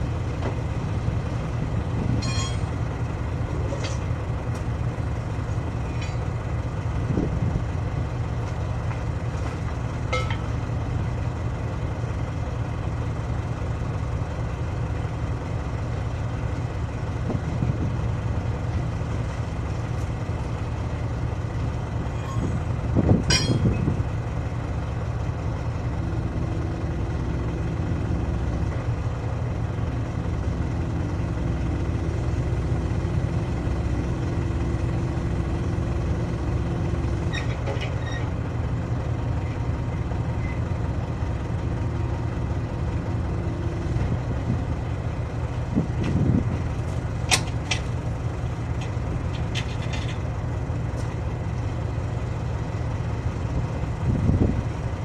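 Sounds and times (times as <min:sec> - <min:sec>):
diesel engine idling: 0:00.0 - 0:55.0
humming tone: 0:02.2 - 0:02.7.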